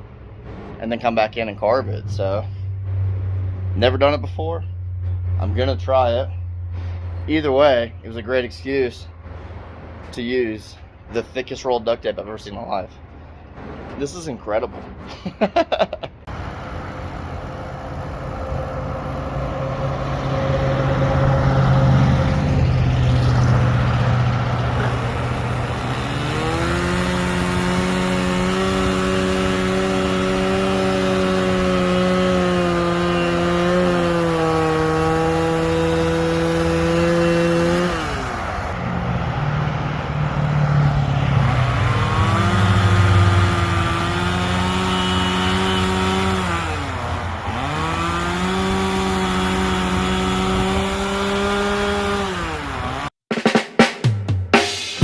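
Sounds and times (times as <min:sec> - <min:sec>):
chainsaw engine revving: 0:16.9 - 0:38.8, 0:40.8 - 0:53.2.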